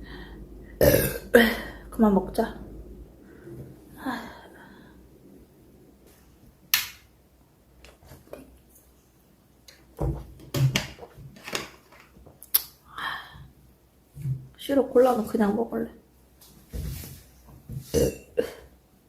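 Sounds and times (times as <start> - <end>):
objects clicking and knocking: 10.0 - 12.6.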